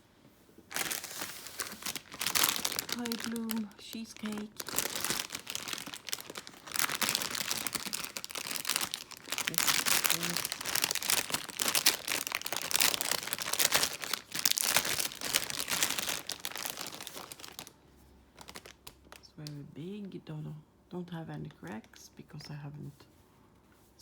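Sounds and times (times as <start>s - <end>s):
plastic packaging crinkling: 0.7s - 19.5s.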